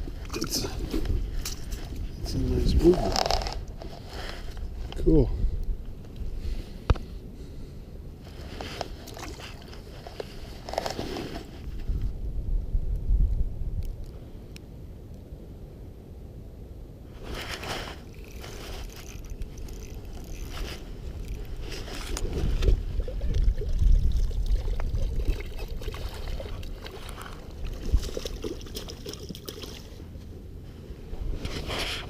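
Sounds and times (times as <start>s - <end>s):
wind rumbling on microphone: 0.0s - 32.0s
water splashing and trickling: 9.0s - 10.2s, 18.0s - 30.0s.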